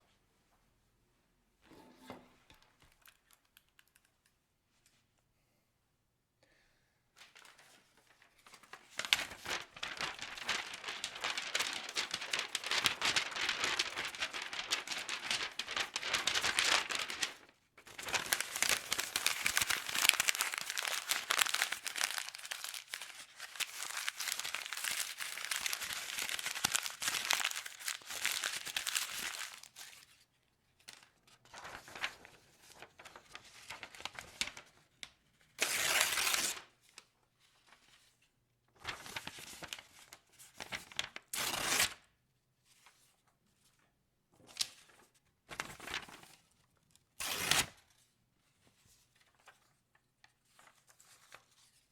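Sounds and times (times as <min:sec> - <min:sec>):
paper being crumpled: 0:07.2 - 0:30.1, 0:30.9 - 0:36.7, 0:38.8 - 0:42.0, 0:44.5 - 0:46.4, 0:47.2 - 0:47.8.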